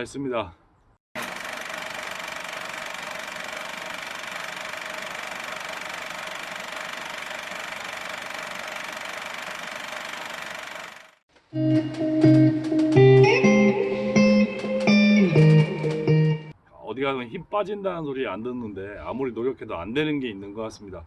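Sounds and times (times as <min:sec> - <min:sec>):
hydraulic log splitter motor whine: 0:01.2 - 0:11.2
guitar music: 0:11.5 - 0:16.5.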